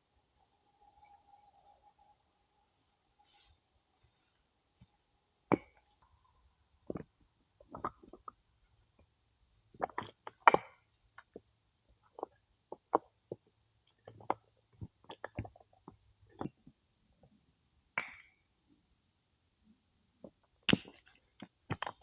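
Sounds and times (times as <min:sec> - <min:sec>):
scrape: 0:03.2 - 0:04.4.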